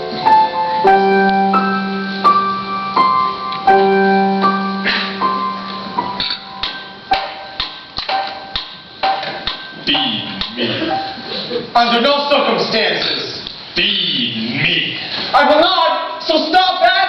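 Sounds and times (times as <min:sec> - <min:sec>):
piano chords: 0:00.0 - 0:11.8.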